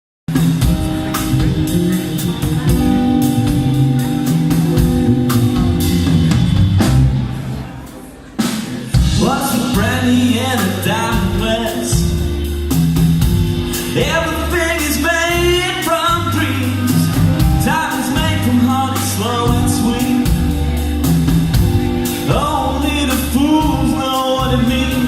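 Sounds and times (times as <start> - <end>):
live band playing: 0.3 - 25.0
person singing: 8.8 - 12.6, 13.7 - 25.0.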